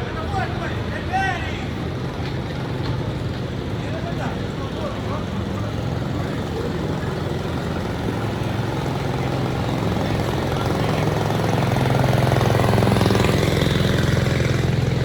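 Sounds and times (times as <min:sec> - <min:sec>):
large engine pulsing drone: 0:00.0 - 0:15.0.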